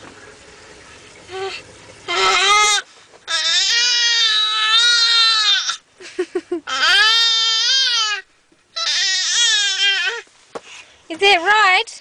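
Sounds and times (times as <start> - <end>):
baby wailing: 1.4 - 5.8, 6.7 - 10.3.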